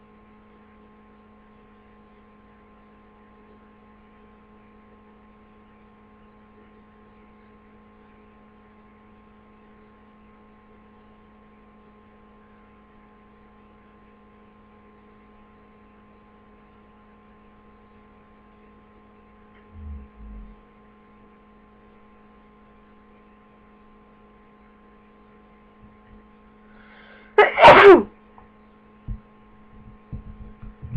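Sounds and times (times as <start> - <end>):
electrical hum: 0.0 - 30.9
faint low thumps: 19.7 - 20.6, 29.1 - 30.9
person sneezing loudly: 27.4 - 28.1.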